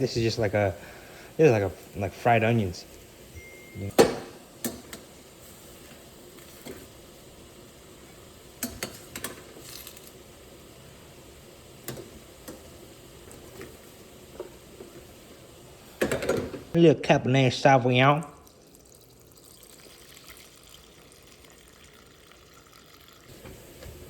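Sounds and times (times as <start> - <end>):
onions sizzling in a pan: 0.0 - 16.8.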